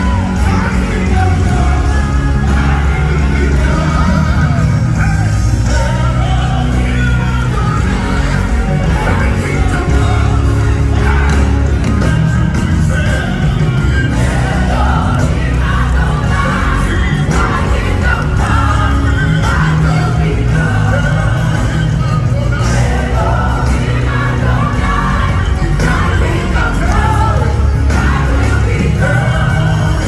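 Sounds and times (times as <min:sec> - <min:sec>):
live gospel music with heavy bass: 0:00.0 - 0:30.0
voices singing: 0:00.0 - 0:30.0.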